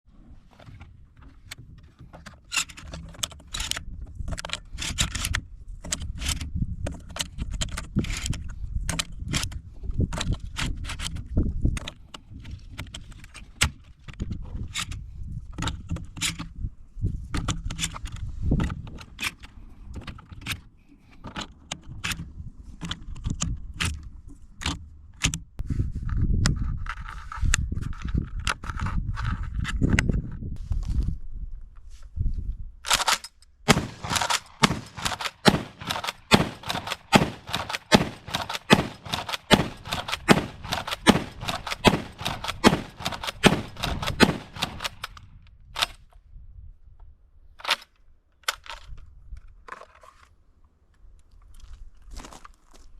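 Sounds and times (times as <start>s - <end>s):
shotgun metallic clicks and rattles: 1.4s - 16.5s, 32.8s - 46.1s, 47.6s - 50.3s.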